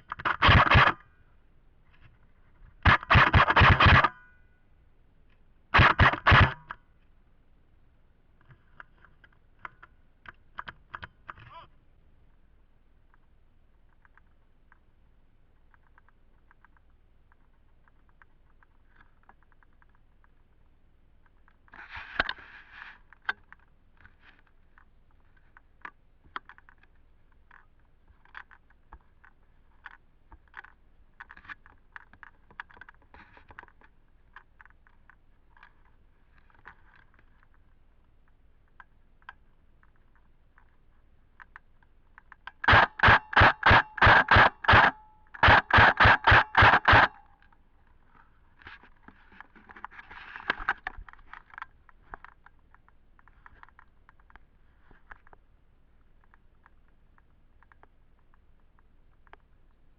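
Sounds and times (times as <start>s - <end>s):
airsoft gun shots: 0.2s - 1.0s, 2.8s - 4.2s, 5.8s - 6.7s, 42.7s - 47.2s
faint clicks: 13.0s - 59.9s.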